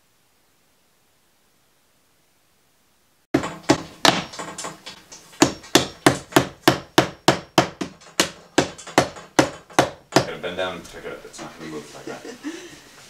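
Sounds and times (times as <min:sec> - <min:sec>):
hammer striking furniture: 0:03.4 - 0:10.5.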